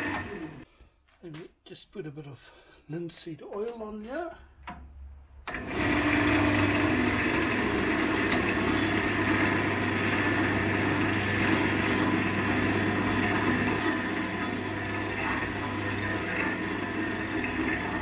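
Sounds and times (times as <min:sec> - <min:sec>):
wood lathe motor hum: 0:00.0 - 0:00.6, 0:05.5 - 0:18.0.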